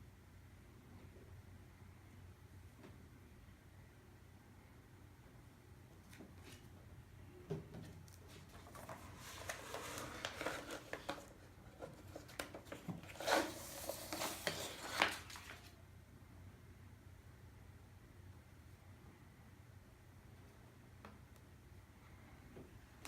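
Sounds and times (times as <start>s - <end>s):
rustling of record packaging: 8.0s - 15.8s.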